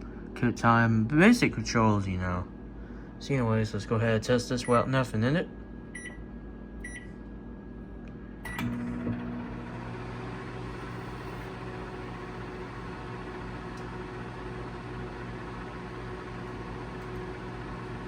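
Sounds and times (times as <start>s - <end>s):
microwave oven humming: 0.0s - 18.0s
microwave keypad beep: 6.0s - 6.2s, 6.8s - 7.1s, 8.5s - 8.7s.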